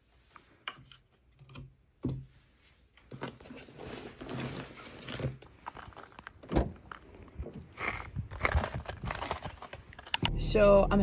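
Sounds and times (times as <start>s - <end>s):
rustling: 2.3s - 10.3s.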